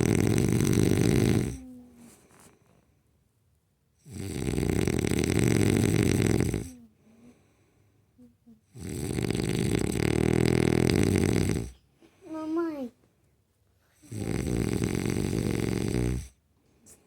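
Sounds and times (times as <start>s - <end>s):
man snoring: 0.0s - 1.7s, 4.0s - 6.8s, 8.8s - 11.8s, 14.0s - 16.4s.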